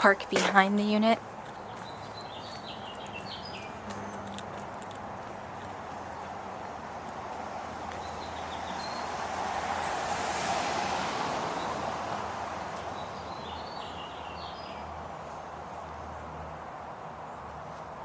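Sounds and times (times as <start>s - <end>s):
birds chirping: 0.0s - 9.4s, 12.8s - 15.1s
vehicle passing by: 1.1s - 18.0s.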